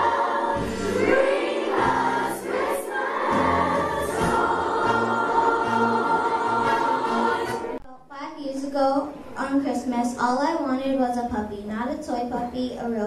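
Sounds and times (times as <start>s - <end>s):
children's choir singing: 0.0s - 7.8s
instrumental accompaniment: 0.0s - 7.8s.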